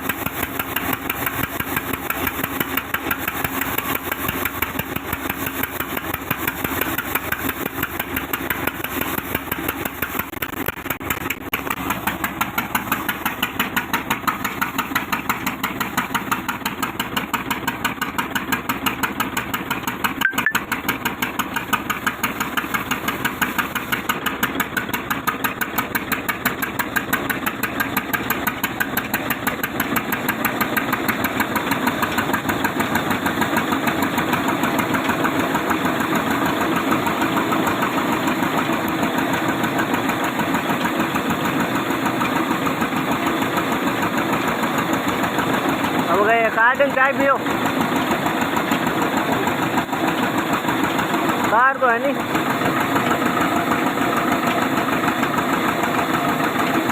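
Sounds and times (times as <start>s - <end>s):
sawmill machine pulsing: 0.0s - 56.9s.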